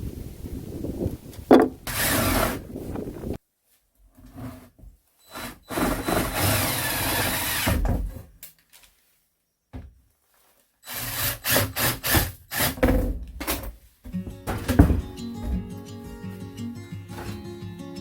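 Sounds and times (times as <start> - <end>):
power drill running: 1.9 - 2.6, 5.3 - 7.8, 10.8 - 12.8
quick knocks: 14.1 - 15.8.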